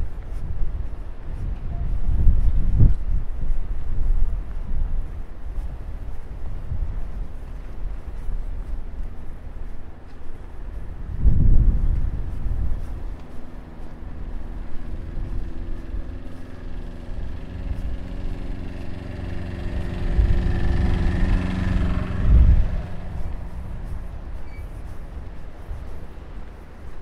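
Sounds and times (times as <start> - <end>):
wind buffeting microphone: 0.0 - 27.0
vehicle driving past: 12.8 - 26.4.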